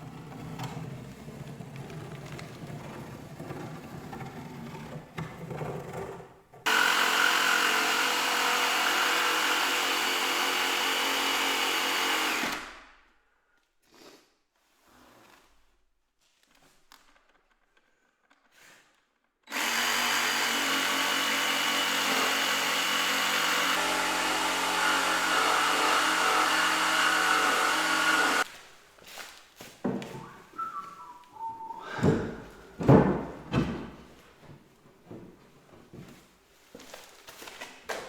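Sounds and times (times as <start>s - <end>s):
electric power tool running: 6.7s - 12.6s, 19.5s - 28.5s
knocks and loud thuds: 31.9s - 34.0s.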